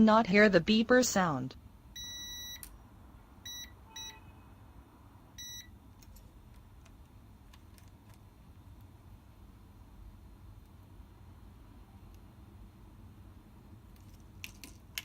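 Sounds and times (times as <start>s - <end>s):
multimeter beeps: 2.0s - 2.7s, 3.4s - 4.2s, 5.4s - 5.8s.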